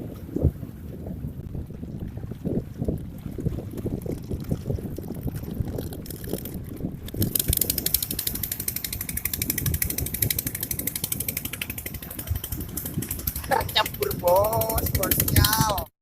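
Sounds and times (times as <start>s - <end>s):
wind buffeting microphone: 0.0s - 15.9s
fishing reel clicking: 5.0s - 15.8s.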